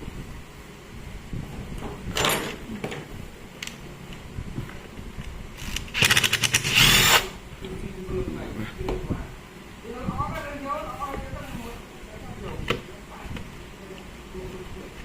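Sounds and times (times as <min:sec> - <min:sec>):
small power tool pulsing: 0:05.6 - 0:07.3.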